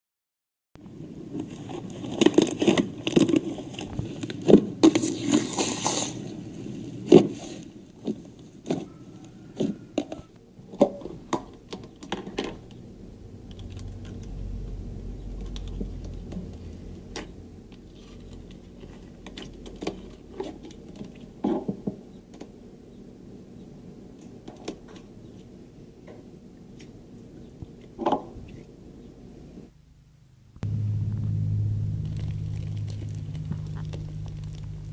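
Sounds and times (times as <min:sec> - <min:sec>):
low rumble: 0:12.2 - 0:20.7, 0:30.6 - 0:34.9.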